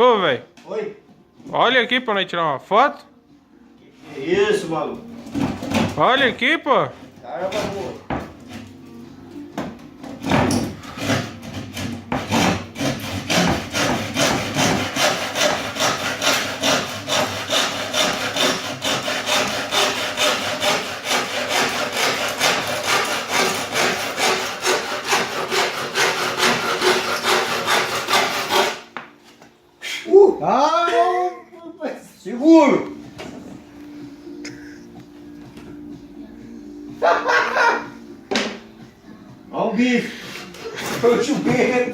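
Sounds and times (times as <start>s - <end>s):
hand saw cutting wood: 7.4s - 8.6s, 10.2s - 29.0s, 40.1s - 41.9s.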